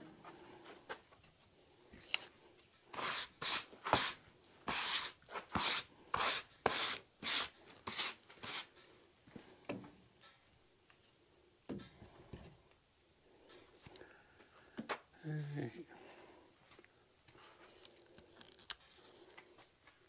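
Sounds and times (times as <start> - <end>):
rubbing or scraping strokes: 2.9 - 8.7.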